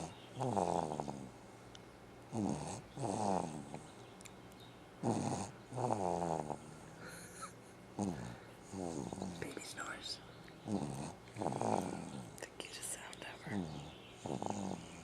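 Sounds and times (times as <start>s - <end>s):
rattling snoring: 0.0s - 1.4s, 2.3s - 3.9s, 5.0s - 7.0s, 8.0s - 15.0s.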